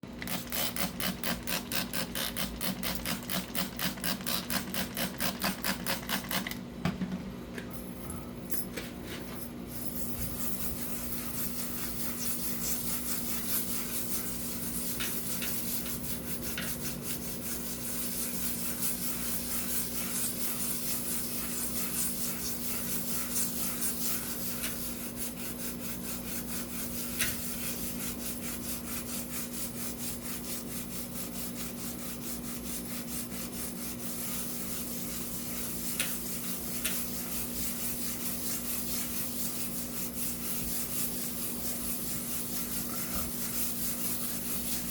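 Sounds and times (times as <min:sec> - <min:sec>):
rhythmic rubbing strokes: 0:09.7 - 0:44.9.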